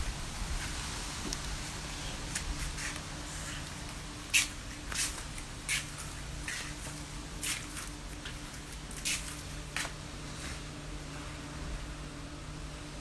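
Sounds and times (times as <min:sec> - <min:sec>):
hurricane wind rumble: 0:00.0 - 0:04.2
crackling rustles: 0:00.0 - 0:10.7.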